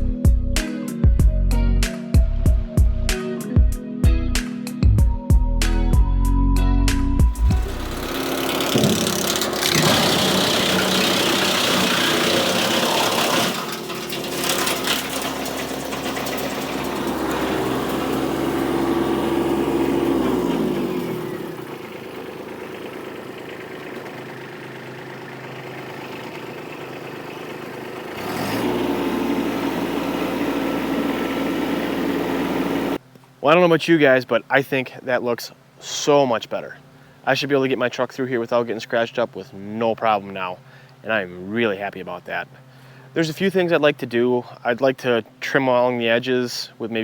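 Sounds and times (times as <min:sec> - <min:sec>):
tractor diesel engine running: 0:07.2 - 0:33.1.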